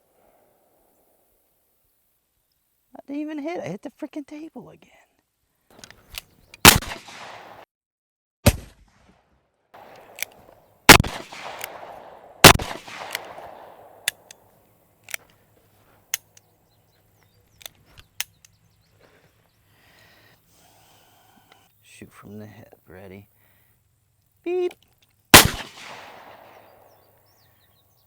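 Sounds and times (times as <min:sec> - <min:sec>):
sharp shot-like cracks: 0:06.6 - 0:07.6, 0:08.4 - 0:14.5, 0:25.3 - 0:27.0.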